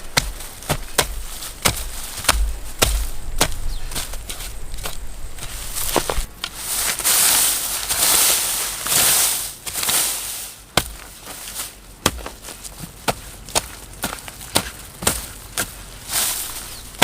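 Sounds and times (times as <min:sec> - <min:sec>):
sharp chopping strikes: 0:00.0 - 0:05.0, 0:10.8 - 0:11.1
dry rustling and crackling: 0:00.0 - 0:17.0.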